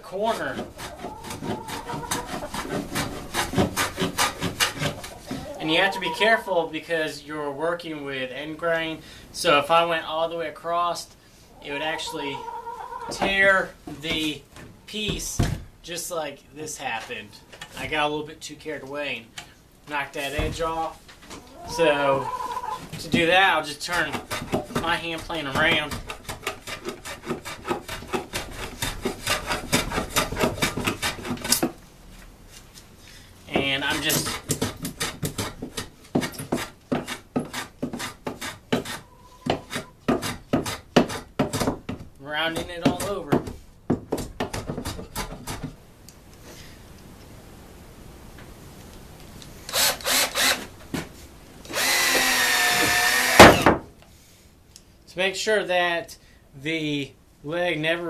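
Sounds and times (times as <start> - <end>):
hand plane shaving wood: 0.2 - 6.0, 23.9 - 31.8, 33.8 - 41.3
power drill driving a screw: 49.7 - 50.7, 51.7 - 53.6.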